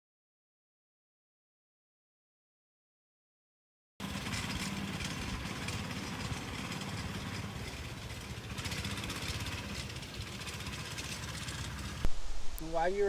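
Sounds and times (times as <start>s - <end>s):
vehicle engine running: 4.0s - 12.1s.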